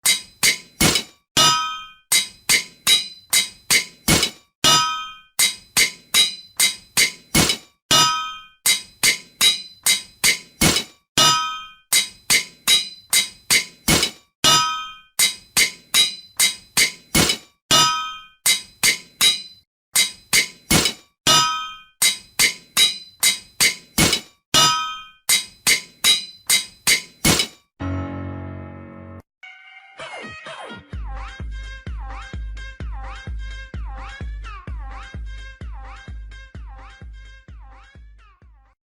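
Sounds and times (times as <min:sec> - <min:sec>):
hammer ringing on anvil: 0:00.0 - 0:27.6.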